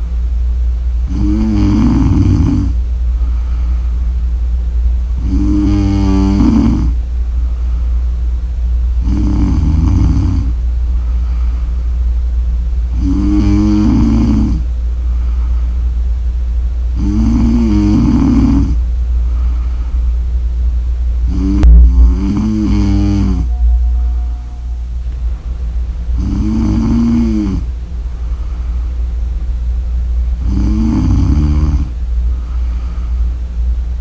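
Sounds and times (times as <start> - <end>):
steady low hum: 0.0 - 34.0
woman snoring: 1.1 - 2.8, 5.2 - 7.0, 9.0 - 10.6, 13.0 - 14.6, 17.0 - 18.8, 26.2 - 27.6, 30.4 - 31.9.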